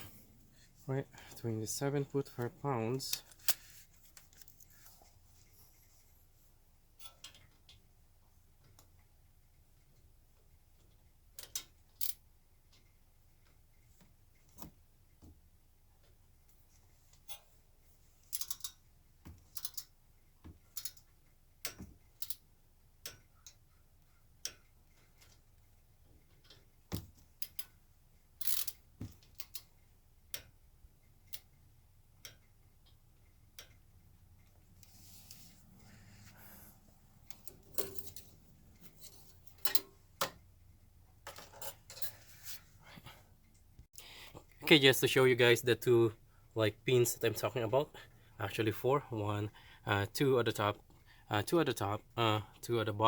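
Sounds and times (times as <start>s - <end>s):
tools and parts clicking: 10.8s - 12.8s, 18.2s - 23.6s, 24.4s - 27.8s, 28.4s - 29.7s, 37.2s - 40.4s, 41.2s - 42.2s.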